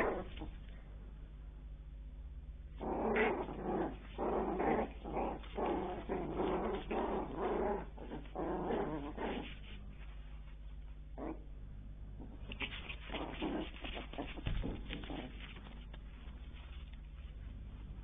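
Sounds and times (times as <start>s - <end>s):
puppies growling: 0.0s - 0.8s, 2.7s - 9.9s, 11.2s - 11.6s, 12.2s - 18.0s.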